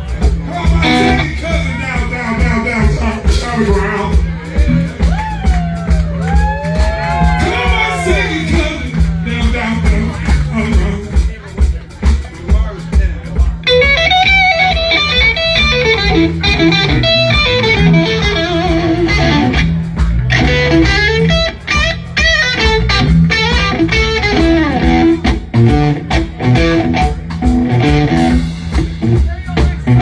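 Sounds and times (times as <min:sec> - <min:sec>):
bass guitar: 0:00.0 - 0:30.0
drums: 0:00.0 - 0:30.0
electric blues guitar solo: 0:00.2 - 0:03.4, 0:13.6 - 0:30.0.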